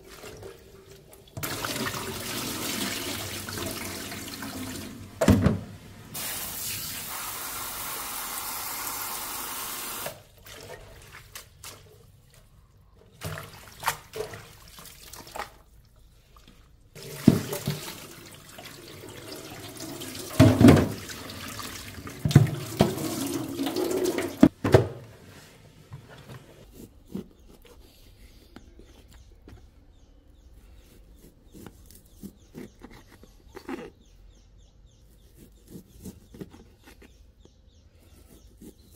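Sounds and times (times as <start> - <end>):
tap water running: 0.0 - 11.4, 17.0 - 24.6
kitchen items clattering: 17.0 - 18.2, 19.3 - 25.0.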